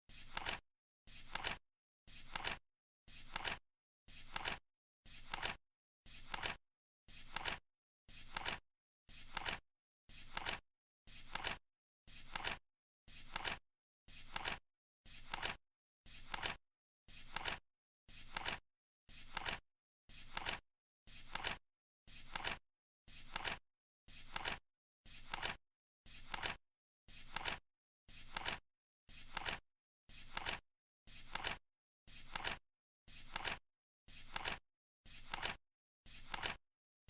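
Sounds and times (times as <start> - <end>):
flip clock card flapping: 0.2 - 0.6, 1.2 - 1.6, 2.3 - 2.6, 3.3 - 3.6, 4.3 - 4.6, 5.2 - 5.6, 6.2 - 6.6, 7.3 - 7.6, 8.3 - 8.6, 9.3 - 9.6, 10.3 - 10.6, 15.3 - 15.6, 18.3 - 18.6, 19.3 - 19.6, 23.3 - 23.6, 25.3 - 25.6, 27.3 - 27.6, 28.3 - 28.6, 29.3 - 29.6, 30.3 - 30.6, 31.3 - 31.6, 32.3 - 32.6, 33.3 - 33.6, 34.3 - 34.6, 35.2 - 35.6, 36.2 - 36.6.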